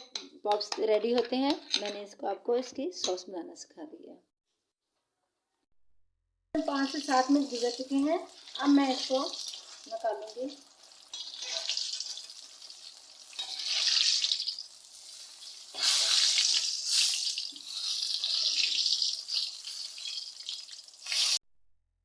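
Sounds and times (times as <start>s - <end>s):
chicken sizzling in hot oil: 6.6s - 21.4s.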